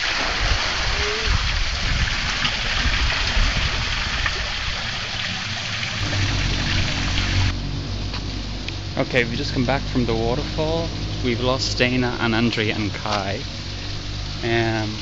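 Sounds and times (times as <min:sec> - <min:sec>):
waterfall rushing: 0:00.0 - 0:15.0
low hum: 0:04.7 - 0:15.0.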